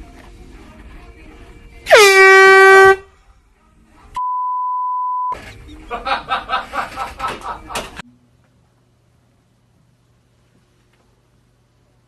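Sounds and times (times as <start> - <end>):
air horn blast: 1.9 - 3.1
censor beep: 4.2 - 5.4.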